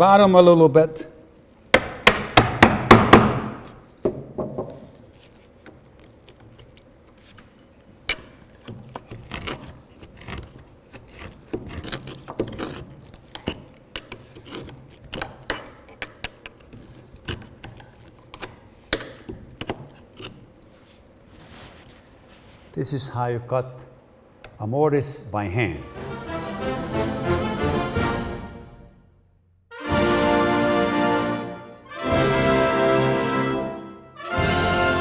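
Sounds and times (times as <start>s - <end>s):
chisel struck hard: 1.8s - 3.8s
chisel scraping wood: 8.3s - 21.9s.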